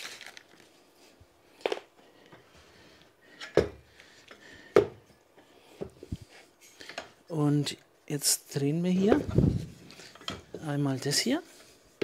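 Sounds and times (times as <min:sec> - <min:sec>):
handling and rubbing noise: 0:08.8 - 0:12.0.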